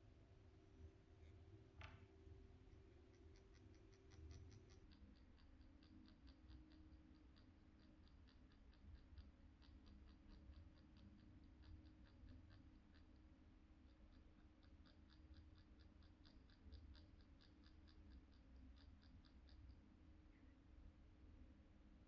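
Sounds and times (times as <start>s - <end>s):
light needle ticks: 2.9s - 20.5s.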